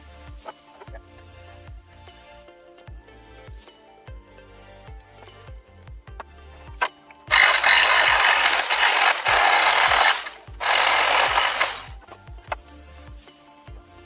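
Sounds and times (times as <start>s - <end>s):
power tool running: 7.3s - 11.9s.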